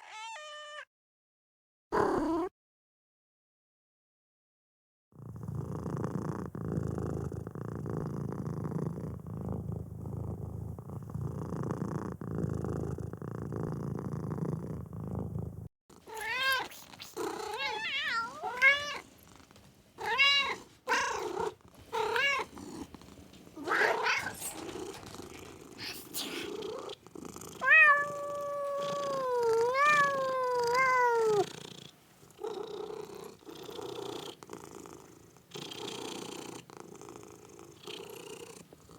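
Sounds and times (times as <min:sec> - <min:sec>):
cat meowing: 0:00.0 - 0:00.9, 0:16.1 - 0:16.8, 0:17.4 - 0:19.0, 0:20.0 - 0:21.3, 0:21.9 - 0:22.5, 0:23.6 - 0:24.6, 0:27.6 - 0:31.4
cat purring: 0:05.2 - 0:38.9.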